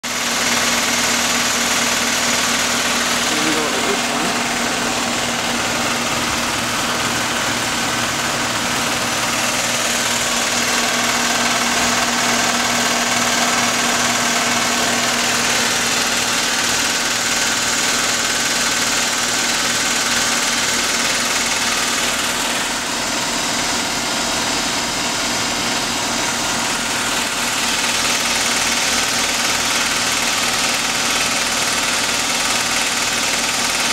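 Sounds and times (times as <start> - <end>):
air conditioner whirring: 2.8 - 17.7.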